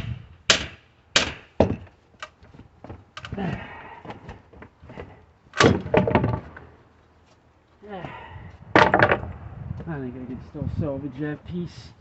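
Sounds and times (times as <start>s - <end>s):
sledgehammer striking wooden pallet: 0.0s - 1.9s, 5.6s - 6.5s, 8.8s - 9.3s.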